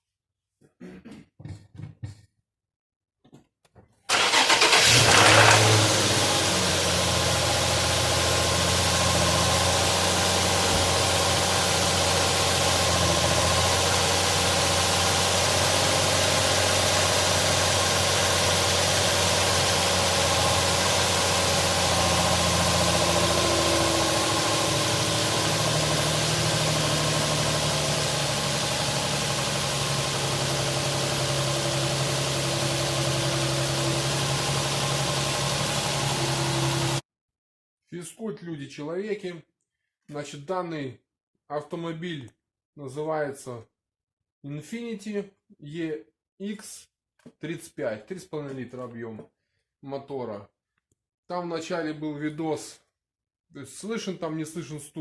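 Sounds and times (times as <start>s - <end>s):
car engine starting and idling: 4.1s - 37.0s.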